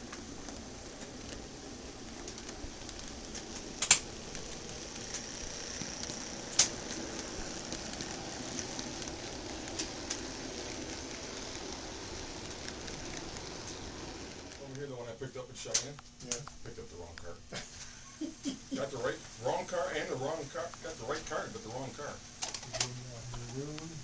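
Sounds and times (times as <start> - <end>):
model train humming: 0.0 - 24.0
sharp clicks: 2.2 - 11.0.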